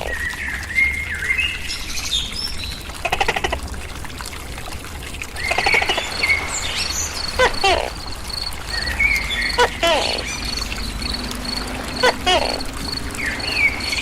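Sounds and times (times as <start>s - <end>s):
birds chirping: 0.0s - 3.6s, 5.4s - 14.0s
cricket trill: 5.4s - 14.0s
rattling pulsed animal calls: 6.8s - 14.0s
falling-pitch animal calls: 7.3s - 10.4s, 11.9s - 12.7s.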